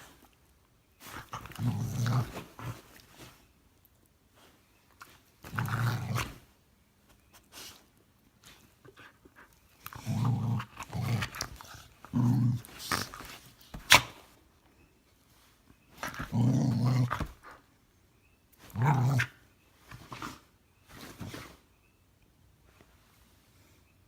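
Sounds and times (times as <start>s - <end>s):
dog growling grumbles: 1.1s - 2.9s, 5.5s - 6.4s, 9.9s - 13.2s, 16.0s - 17.6s, 18.7s - 19.4s.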